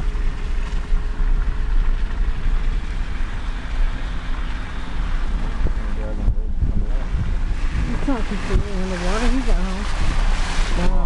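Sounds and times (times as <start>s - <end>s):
car engine and tyre rumble: 0.0s - 11.0s.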